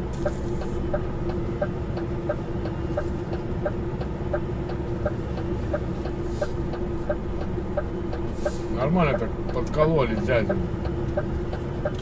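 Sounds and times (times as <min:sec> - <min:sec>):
truck diesel engine humming: 0:00.0 - 0:12.0
indicator relay ticking: 0:00.2 - 0:08.2, 0:10.4 - 0:12.0.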